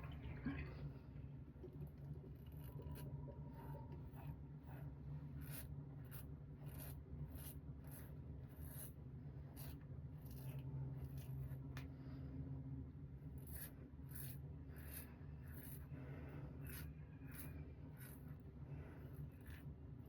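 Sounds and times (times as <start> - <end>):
faint low hum: 0.0 - 20.0
razor cutting stubble: 5.4 - 11.6, 13.3 - 15.9, 16.5 - 18.4.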